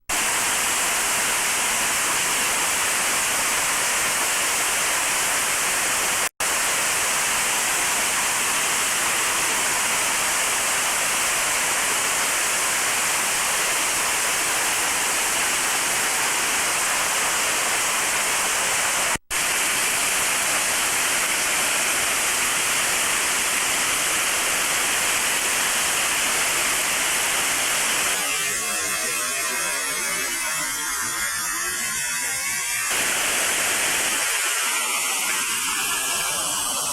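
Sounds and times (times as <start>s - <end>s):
torrential rain pouring: 0.1s - 28.2s, 32.9s - 36.9s.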